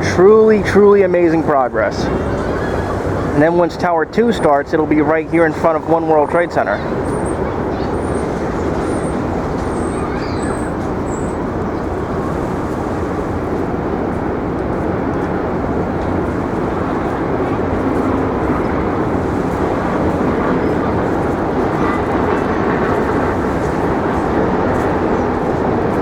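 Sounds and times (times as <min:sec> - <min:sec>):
city traffic rumble: 0:00.0 - 0:26.0
faint high chirps: 0:07.7 - 0:11.4.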